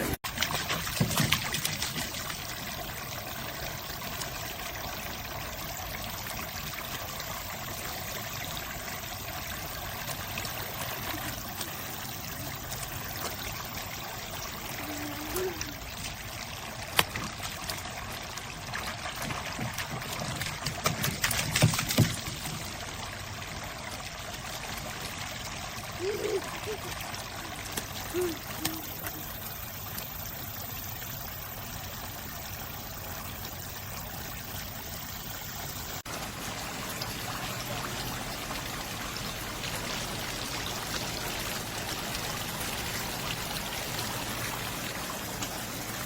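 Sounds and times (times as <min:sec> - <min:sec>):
water splashes: 0:00.0 - 0:46.0
water trickling and pouring: 0:00.0 - 0:46.0.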